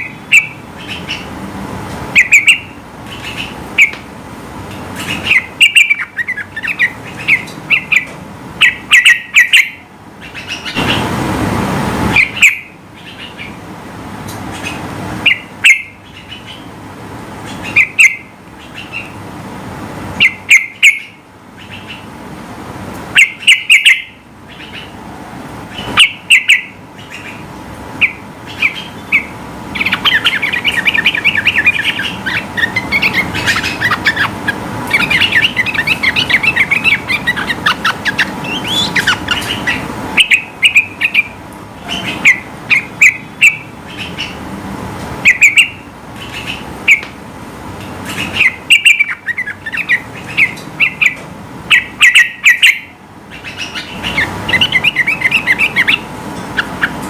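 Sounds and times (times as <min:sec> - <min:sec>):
bird chirping: 0:00.0 - 0:01.4, 0:02.1 - 0:04.0, 0:04.7 - 0:11.1, 0:12.1 - 0:13.6, 0:14.3 - 0:16.8, 0:17.4 - 0:19.2, 0:20.2 - 0:22.1, 0:23.2 - 0:25.0, 0:25.7 - 0:44.4, 0:45.2 - 0:47.1, 0:47.8 - 0:57.0
low rushing noise: 0:10.7 - 0:13.0.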